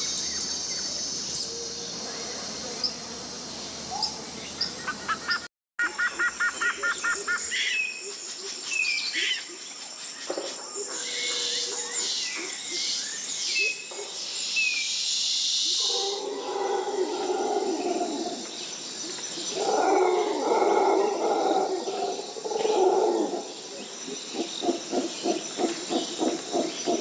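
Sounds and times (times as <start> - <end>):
high insect whine: 0.0 - 5.4, 6.2 - 27.0
chirping insect and bird chorus: 0.0 - 27.0
loud low roaring calls: 15.8 - 18.5, 19.5 - 23.6.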